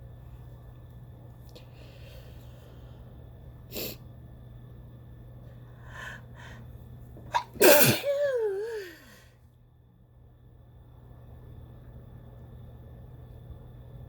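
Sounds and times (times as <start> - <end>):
woman sneezing: 7.3 - 9.0.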